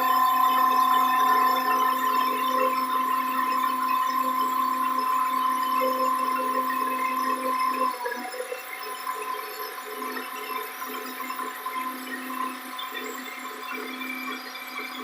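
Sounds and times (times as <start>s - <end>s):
concrete truck mechanical whine: 0.0s - 7.4s.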